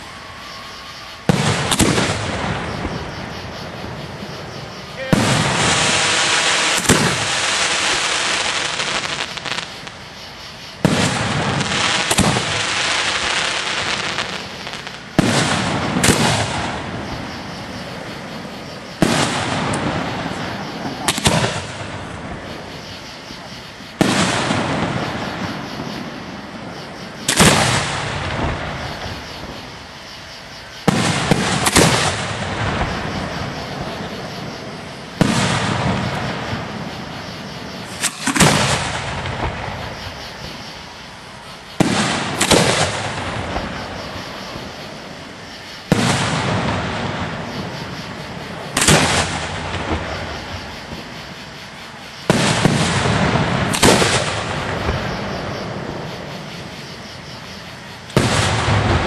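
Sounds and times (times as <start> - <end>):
firework shells bursting: 1.2 - 26.5, 27.2 - 29.7, 30.8 - 40.8, 41.8 - 44.7, 45.8 - 51.2, 52.3 - 55.4.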